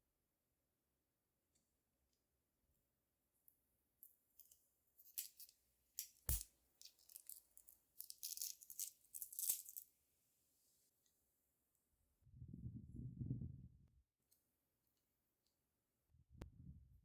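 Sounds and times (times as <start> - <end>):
beads rattling: 4.4 - 9.9.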